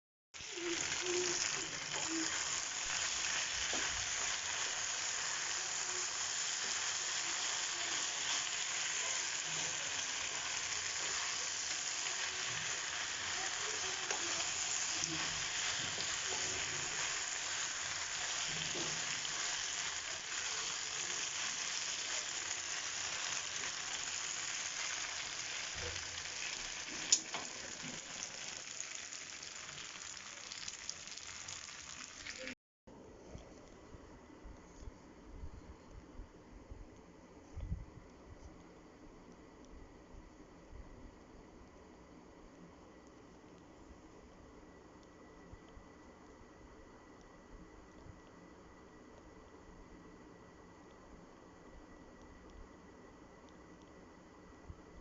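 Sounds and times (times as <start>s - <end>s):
food sizzling in a pan: 0.4s - 32.6s.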